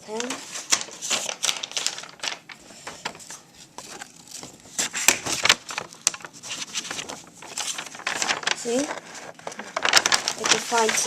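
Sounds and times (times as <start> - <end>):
paper rustling: 0.0 - 11.0.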